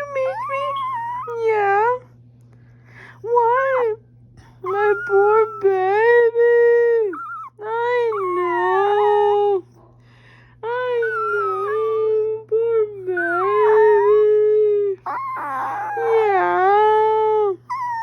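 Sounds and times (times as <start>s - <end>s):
small dog howling: 0.1s - 1.5s, 4.6s - 6.2s, 6.9s - 9.6s, 10.8s - 12.3s, 13.0s - 16.8s, 17.4s - 18.0s.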